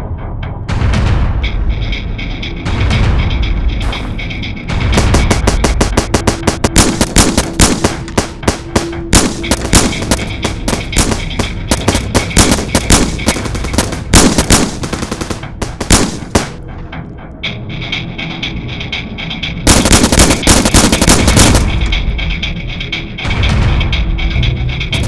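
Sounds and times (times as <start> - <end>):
gunfire bursts: 3.8 - 4.4, 5.0 - 16.9, 19.7 - 22.2.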